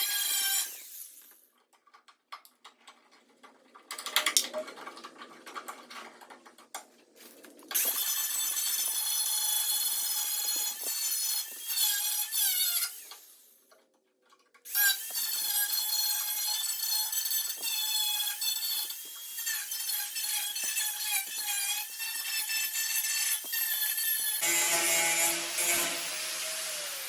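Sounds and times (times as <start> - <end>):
power tool cutting sheet metal: 0.0 - 1.3, 7.7 - 13.4, 14.7 - 27.0.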